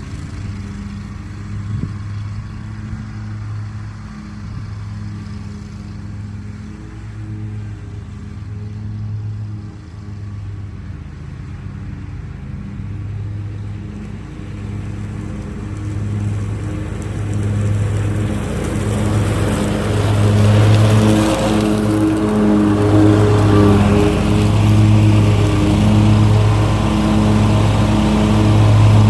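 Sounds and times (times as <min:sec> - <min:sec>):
lawn mower engine running: 0:00.0 - 0:29.0.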